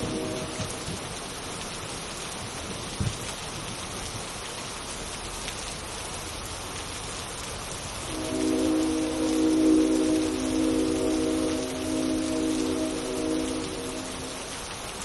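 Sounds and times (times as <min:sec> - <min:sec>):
synthesized train horn chord: 0:00.0 - 0:01.5, 0:08.0 - 0:15.0
steady rain: 0:00.0 - 0:15.0.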